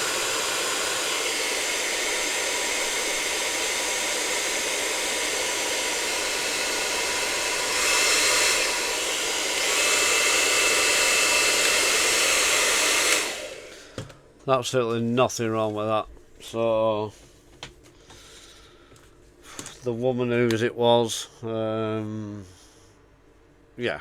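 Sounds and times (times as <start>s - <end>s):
hairdryer blowing air: 0.0s - 14.2s.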